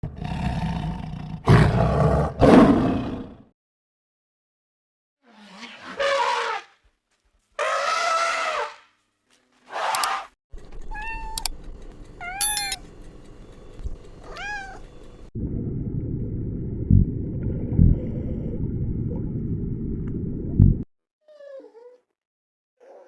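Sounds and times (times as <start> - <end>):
steady low rumble: 15.0 - 20.8.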